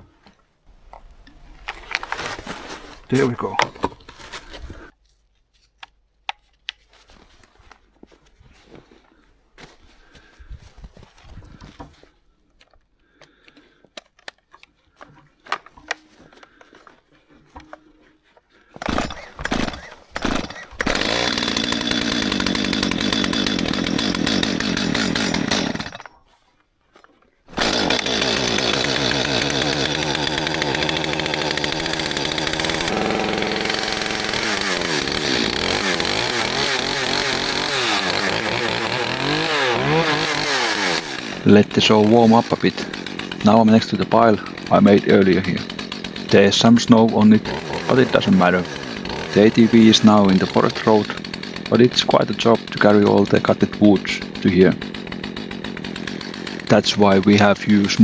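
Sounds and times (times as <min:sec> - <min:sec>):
chainsaw engine running: 0:00.7 - 0:04.9, 0:18.8 - 0:26.0, 0:27.5 - 0:58.0
chainsaw sputtering: 0:00.7 - 0:04.9, 0:18.8 - 0:26.1, 0:27.5 - 0:58.0.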